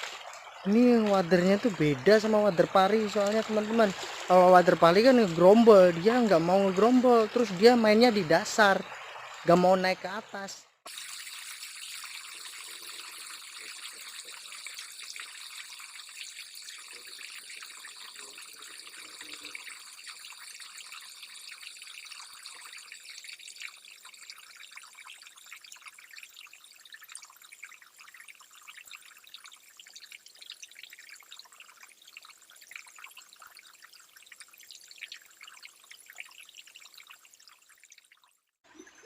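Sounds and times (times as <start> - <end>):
stream water trickling: 0.0 - 39.0.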